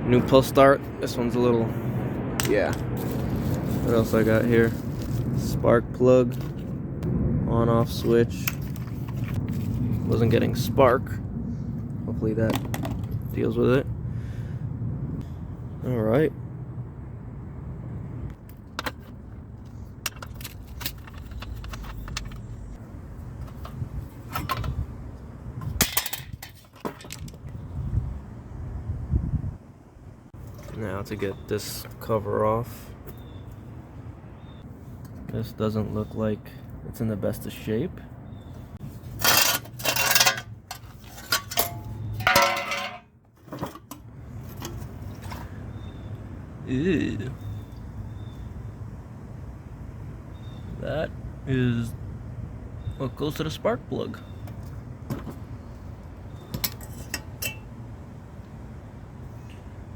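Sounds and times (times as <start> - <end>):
steady low rumble: 0.0 - 26.6
metallic clinks of engine parts: 18.5 - 22.8, 39.0 - 45.9, 56.3 - 57.9
metal parts rattling: 20.0 - 22.6, 39.0 - 45.5.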